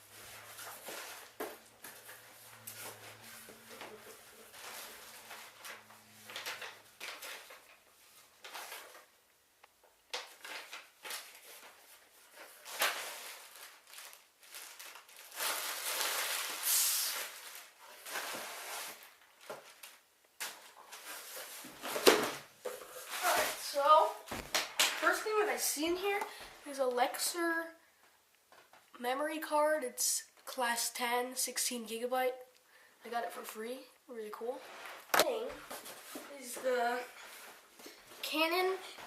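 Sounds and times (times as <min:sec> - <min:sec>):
packaging rustling and crinkling: 0:00.1 - 0:09.2, 0:10.1 - 0:25.4.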